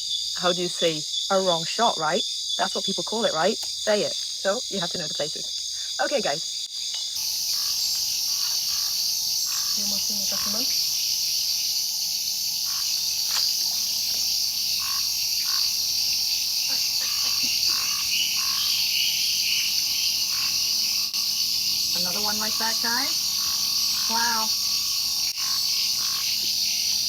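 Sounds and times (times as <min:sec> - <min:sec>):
high-pitched insect buzz: 0:00.0 - 0:27.0
frog calls: 0:07.0 - 0:27.0.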